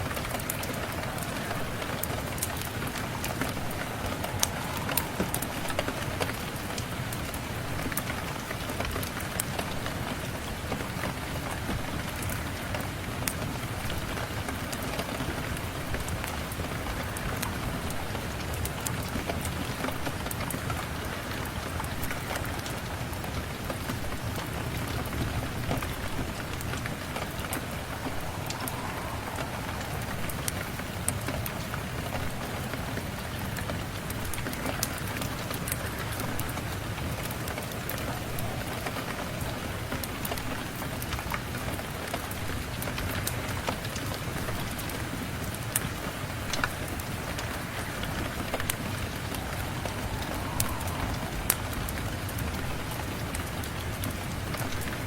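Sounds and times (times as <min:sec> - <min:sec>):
steady rain: 0:00.0 - 0:55.0
fireplace crackling: 0:00.1 - 0:09.5, 0:25.9 - 0:32.6, 0:46.4 - 0:54.5.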